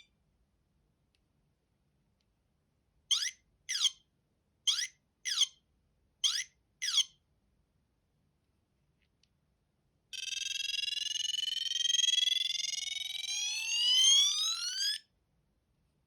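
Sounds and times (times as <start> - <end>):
phone ringtone chirps: 10.2 - 14.7.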